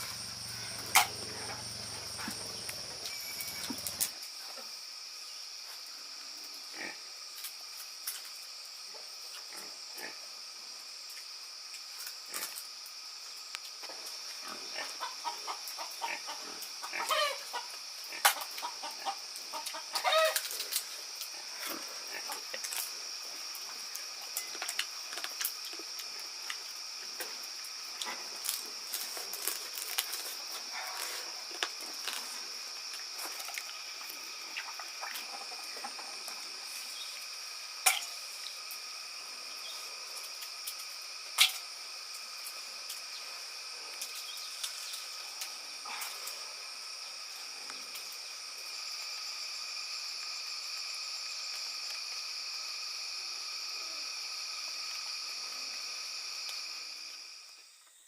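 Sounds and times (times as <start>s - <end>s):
high-pitched insect drone: 0.0s - 7.5s, 9.5s - 58.0s
rustles and snaps: 28.0s - 34.2s.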